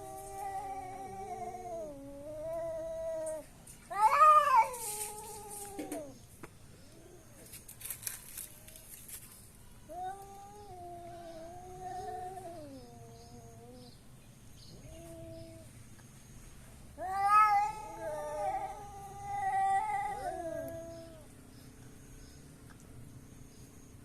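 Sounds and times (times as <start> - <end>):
cats yowling in a fight: 0.0 - 6.2, 9.9 - 13.8, 14.8 - 15.7, 17.0 - 21.3.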